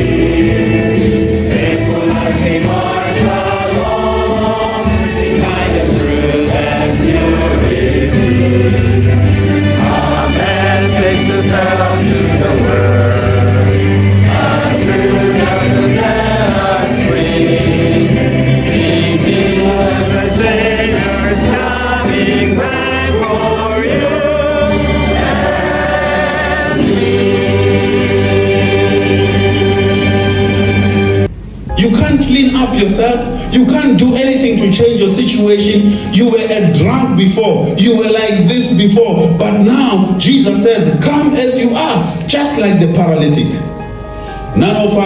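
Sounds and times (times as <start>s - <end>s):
choir singing gospel song: 0.0s - 30.9s
low sustained accompaniment: 31.2s - 36.7s.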